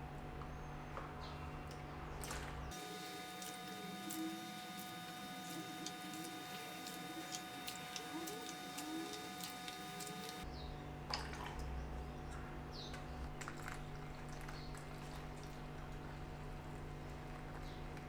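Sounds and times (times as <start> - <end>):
workshop hum: 2.2 - 10.6.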